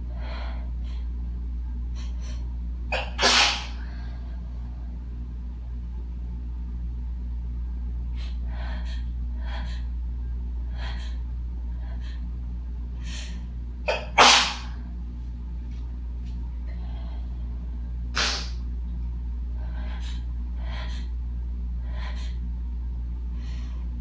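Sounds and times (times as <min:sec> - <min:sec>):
steady low hum: 0:00.0 - 0:24.0
person sneezing: 0:02.9 - 0:03.8, 0:13.9 - 0:14.8, 0:18.2 - 0:18.6
person catching breath before sneezing: 0:03.0 - 0:03.9, 0:18.2 - 0:18.6.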